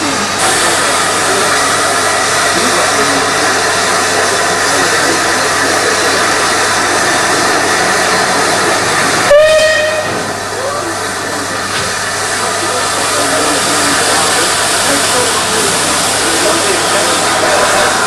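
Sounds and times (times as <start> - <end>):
steam locomotive whistle: 9.2 - 10.3.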